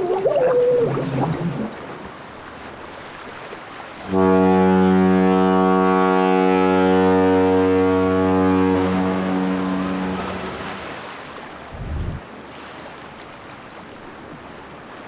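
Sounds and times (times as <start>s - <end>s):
ship's horn blast: 4.0s - 11.7s.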